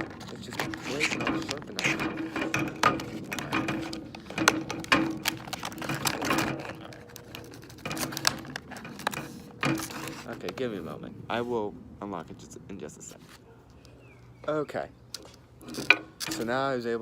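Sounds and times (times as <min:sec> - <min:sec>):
plastic packaging crackling: 0:00.0 - 0:10.6.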